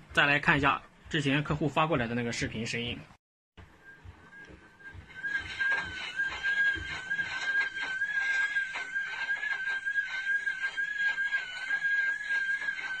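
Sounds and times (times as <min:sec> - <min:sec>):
washing machine high-pitched squeal: 0:03.6 - 0:13.0.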